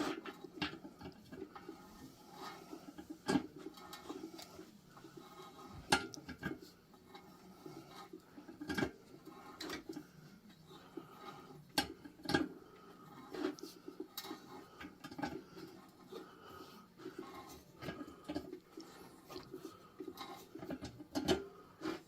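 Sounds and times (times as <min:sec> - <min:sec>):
faint scraping: 0:00.0 - 0:22.0.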